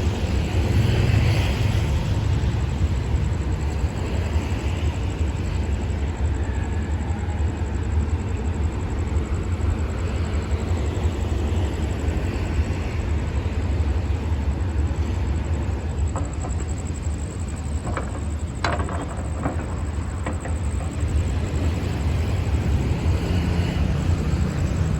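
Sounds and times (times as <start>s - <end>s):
locomotive engine hum: 0.0s - 24.9s.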